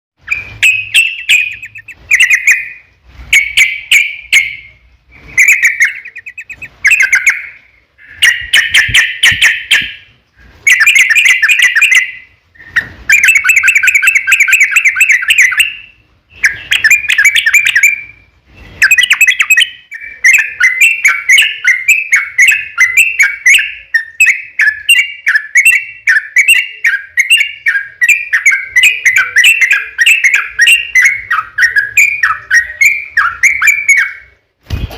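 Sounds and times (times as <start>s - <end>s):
bulbul singing bubbly phrases: 0.8s - 2.8s, 5.4s - 9.8s.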